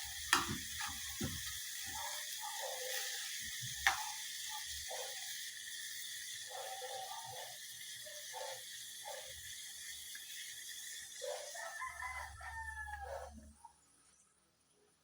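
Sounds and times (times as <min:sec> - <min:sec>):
rooster crowing: 0:11.2 - 0:13.6.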